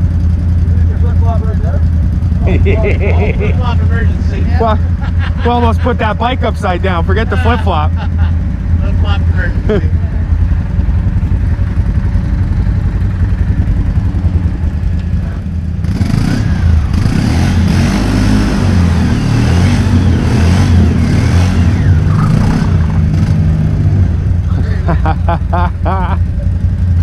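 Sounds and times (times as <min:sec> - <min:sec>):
quad bike engine idling and revving: 0:00.0 - 0:27.0.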